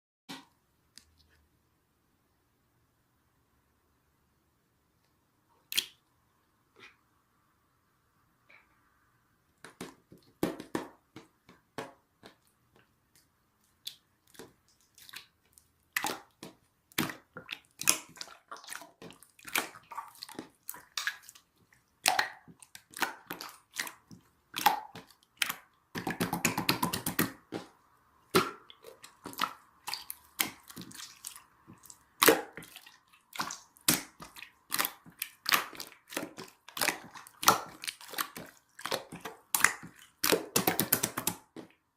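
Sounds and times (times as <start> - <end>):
wet sticky clicks and crackles: 5.6 - 6.1, 11.2 - 41.8.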